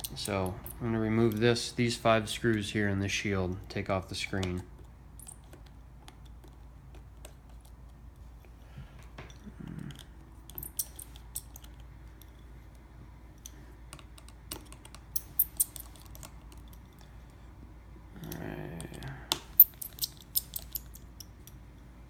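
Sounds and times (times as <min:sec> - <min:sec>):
small tools clicking on screws: 0:13.4 - 0:17.1, 0:18.2 - 0:21.3.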